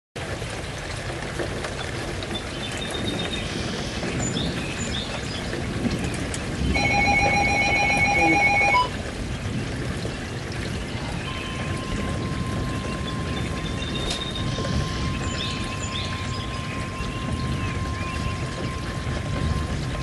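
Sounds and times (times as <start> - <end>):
rapidly pulsing alert beep: 6.8 - 8.9.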